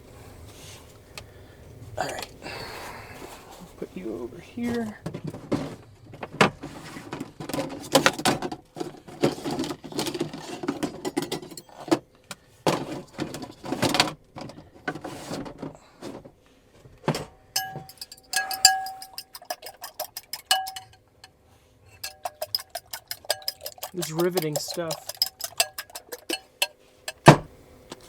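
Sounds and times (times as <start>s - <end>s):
cooking utensils clattering: 7.4s - 12.0s, 17.6s - 21.3s, 22.0s - 28.0s.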